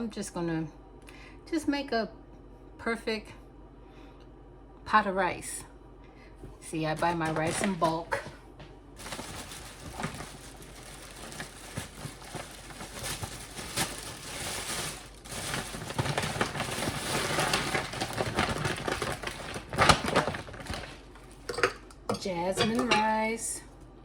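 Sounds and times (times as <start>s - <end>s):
rice bag crinkling and rustling: 6.9s - 8.2s, 9.0s - 21.5s.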